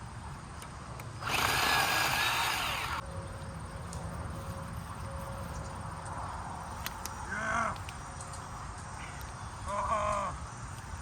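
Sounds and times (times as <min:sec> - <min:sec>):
cordless chainsaw running: 0:01.2 - 0:03.0.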